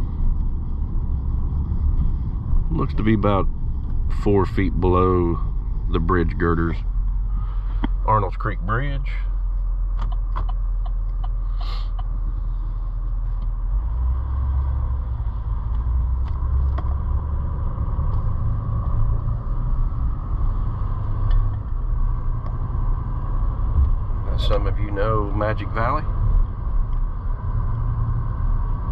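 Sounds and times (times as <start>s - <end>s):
car engine and road rumble: 0.0s - 28.9s.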